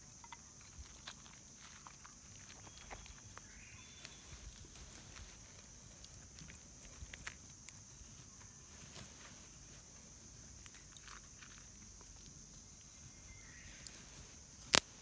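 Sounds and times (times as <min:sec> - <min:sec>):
kindling crackling: 0:13.6 - 0:15.0.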